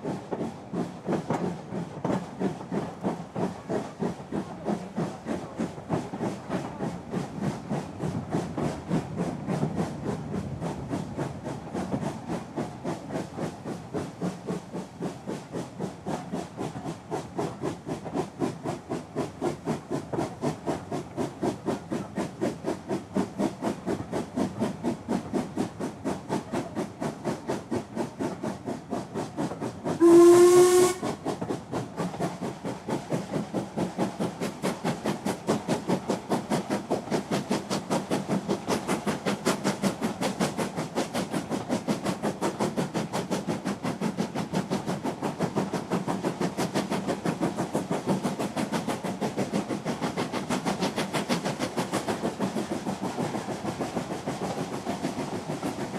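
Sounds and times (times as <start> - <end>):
hiss of steam: 0.0 - 55.9
steam locomotive chuffing: 0.0 - 55.9
steam whistle blast: 30.0 - 31.2.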